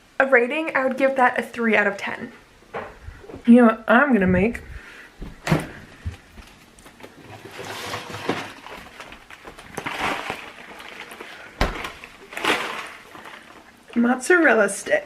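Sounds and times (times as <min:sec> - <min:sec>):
rustling: 0:04.4 - 0:14.3
kitchen knocks and clatters: 0:11.6 - 0:13.4.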